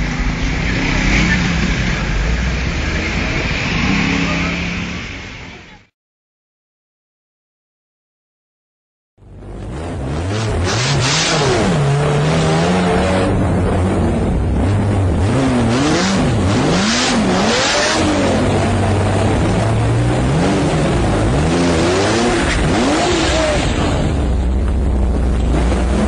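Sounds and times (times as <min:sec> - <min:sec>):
car engine revving hard: 0:00.0 - 0:05.5, 0:09.5 - 0:24.5, 0:25.2 - 0:26.0.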